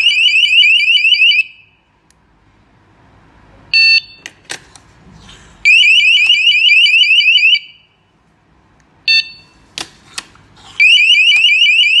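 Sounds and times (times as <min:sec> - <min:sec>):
door alarm siren chirping: 0:00.0 - 0:01.7, 0:05.7 - 0:07.8, 0:10.8 - 0:12.0.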